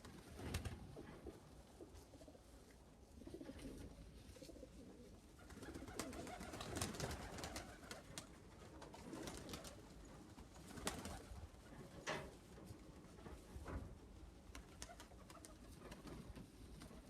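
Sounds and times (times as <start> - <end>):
pigeons cooing: 3.1 - 8.1.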